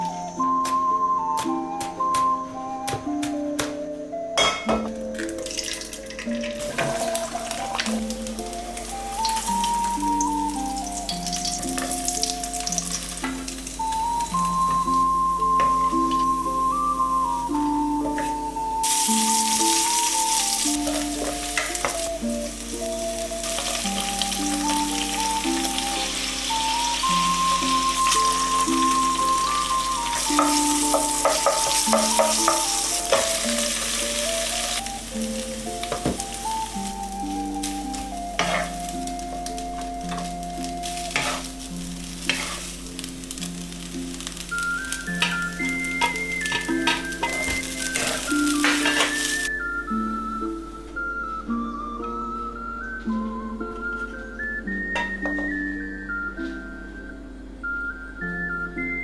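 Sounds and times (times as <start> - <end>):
background music: 0.0 - 59.0
food sizzling in a pan: 4.4 - 50.4
spatula scraping a pan: 38.4 - 38.9, 41.0 - 41.6, 42.2 - 42.9.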